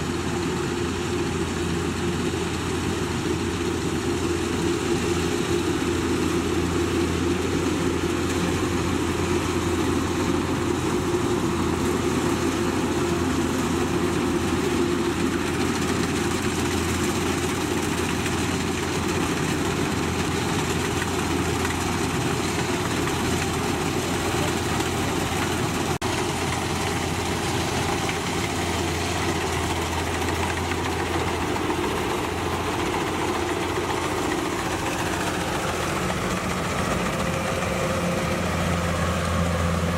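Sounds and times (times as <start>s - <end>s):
combine harvester engine drone: 0.0s - 39.9s.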